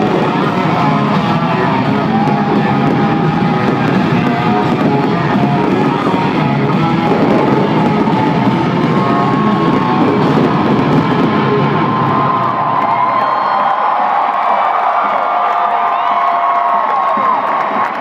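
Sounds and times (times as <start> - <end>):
country-rock music over loudspeakers: 0.0 - 12.6.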